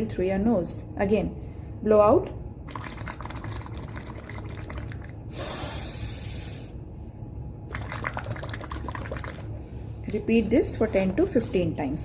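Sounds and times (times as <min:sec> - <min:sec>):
bubbling through a straw in water: 0:02.6 - 0:05.3, 0:07.6 - 0:09.6
breathy hiss: 0:05.3 - 0:06.8.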